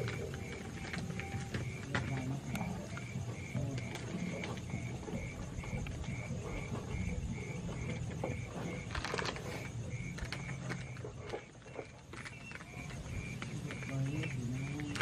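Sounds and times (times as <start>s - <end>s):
scattered clicks: 0.0s - 4.8s, 8.8s - 15.0s
insect chirping: 0.0s - 15.0s.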